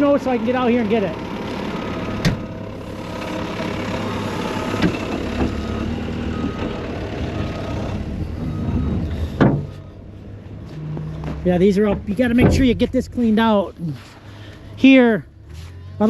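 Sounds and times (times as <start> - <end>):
loader engine running: 0.0 - 16.0
reversing alarm beeping: 4.0 - 11.2.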